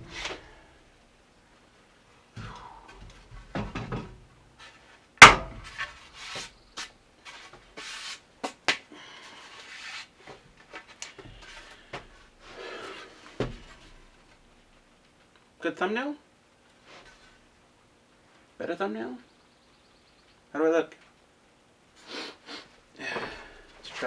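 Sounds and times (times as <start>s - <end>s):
wooden boards clattering: 5.2s - 6.0s.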